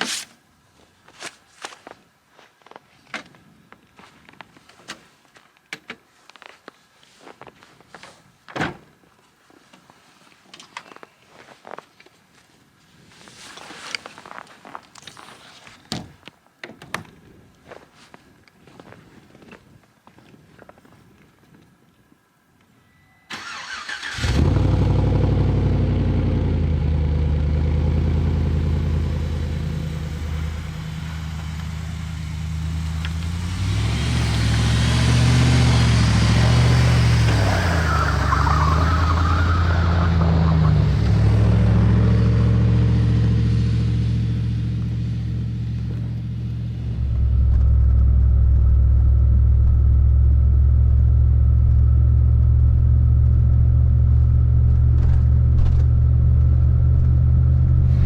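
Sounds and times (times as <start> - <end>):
pickup truck engine drone: 23.4 - 58.0.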